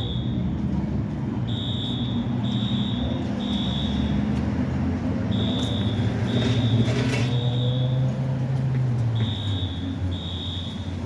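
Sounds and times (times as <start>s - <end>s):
fire alarm beeps: 0.0s - 0.5s, 1.4s - 4.2s, 5.3s - 8.1s, 9.1s - 11.0s.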